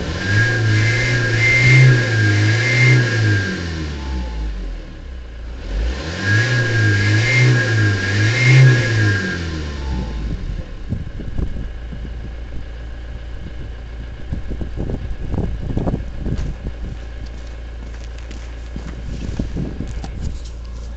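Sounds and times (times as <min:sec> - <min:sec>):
turbocharger whistling: 0:00.0 - 0:04.7, 0:05.8 - 0:10.4
diesel engine revving and idling: 0:00.0 - 0:20.9
faint engine knocks: 0:15.8 - 0:20.9.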